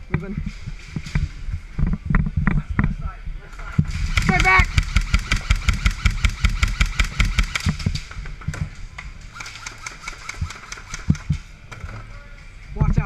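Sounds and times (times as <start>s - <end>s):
airsoft gun rapid firing: 3.9s - 8.0s, 9.3s - 11.4s.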